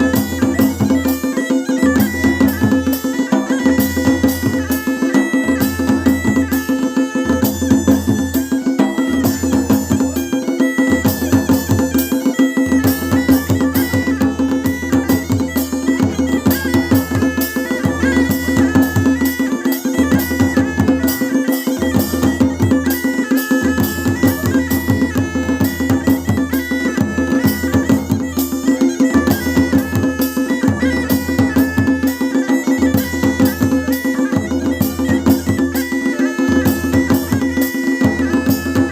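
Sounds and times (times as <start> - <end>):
bagpipe melody over drone: 0.0 - 38.9
drums beating a steady rhythm: 0.0 - 38.9.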